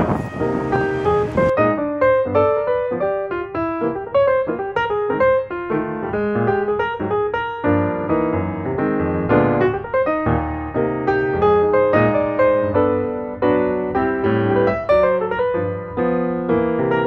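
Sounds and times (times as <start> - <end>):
piano music: 0.0 - 17.0.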